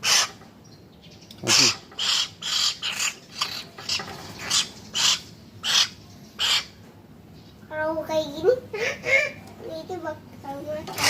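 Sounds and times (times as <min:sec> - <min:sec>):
bird chick begging squawks: 0:00.0 - 0:00.4, 0:01.4 - 0:06.8, 0:08.8 - 0:09.4.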